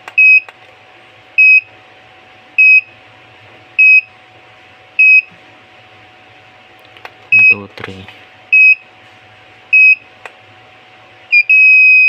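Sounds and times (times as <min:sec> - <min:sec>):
high-pitched buzzer beeps: 0:01.4 - 0:01.7, 0:02.6 - 0:02.9, 0:03.8 - 0:04.1, 0:05.0 - 0:05.3, 0:08.6 - 0:08.8, 0:09.8 - 0:10.0, 0:11.3 - 0:12.0.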